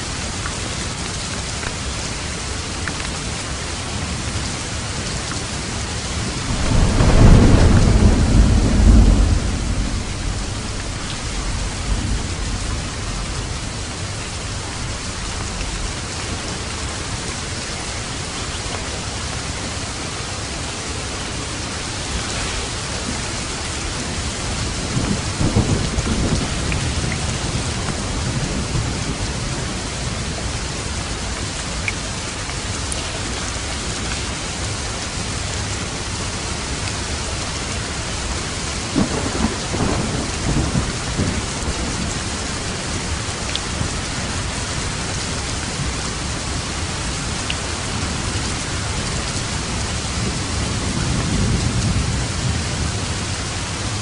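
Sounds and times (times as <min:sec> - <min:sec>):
heavy rain on a roof: 0:00.0 - 0:54.0
thunder rumbling: 0:06.1 - 0:16.2, 0:21.4 - 0:30.6, 0:38.9 - 0:54.0.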